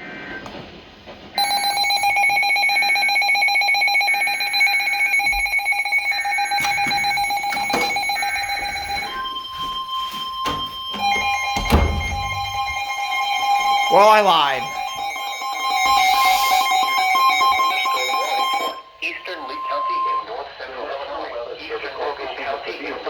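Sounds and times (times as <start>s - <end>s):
high steady alert tone: 1.4s - 16.3s
two-tone alarm: 1.4s - 23.0s.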